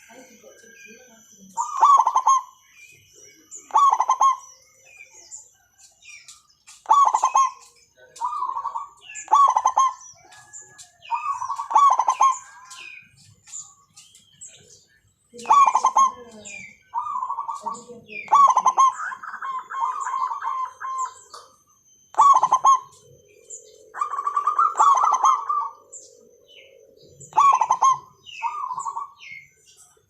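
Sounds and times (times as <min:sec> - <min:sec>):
dove cooing: 0:00.0 - 0:29.5.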